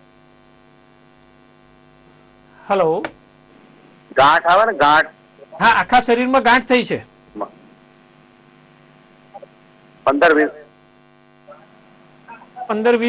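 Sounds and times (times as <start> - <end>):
electrical mains hum: 0.0 - 13.0
voice burst: 11.5 - 12.8.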